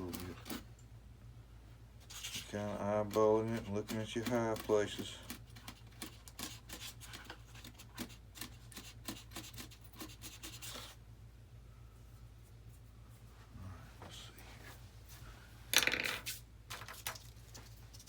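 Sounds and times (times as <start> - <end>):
faint low hum: 0.0 - 18.0
hand tool scraping foam: 2.1 - 11.0.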